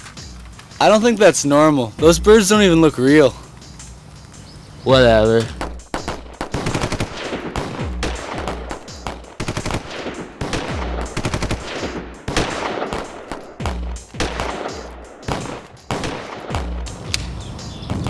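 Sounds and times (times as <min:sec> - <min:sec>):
rapid automatic gunfire: 0:05.8 - 0:16.6.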